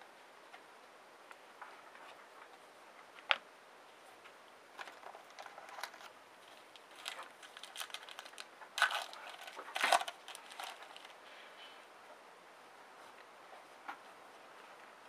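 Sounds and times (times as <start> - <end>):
foil wrapper crinkling: 4.8 - 11.2.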